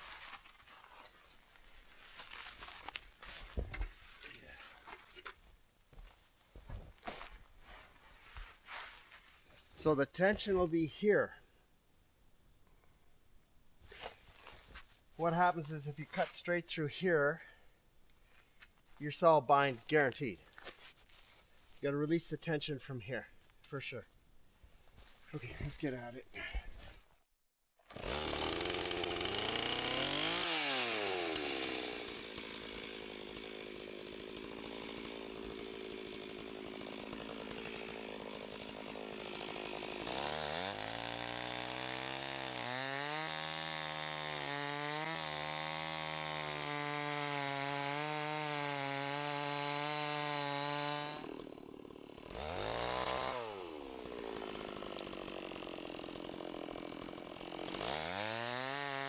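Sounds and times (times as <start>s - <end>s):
chainsaw cutting log: 27.8s - 59.0s.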